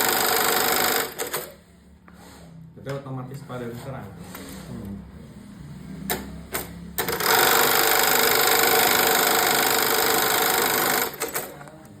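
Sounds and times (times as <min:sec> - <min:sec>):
loud mechanical machine noise: 0:04.2 - 0:11.7.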